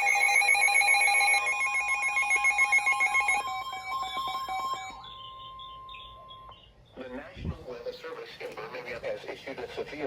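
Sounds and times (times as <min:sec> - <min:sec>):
warbling alert tones from radio: 0:00.0 - 0:06.3.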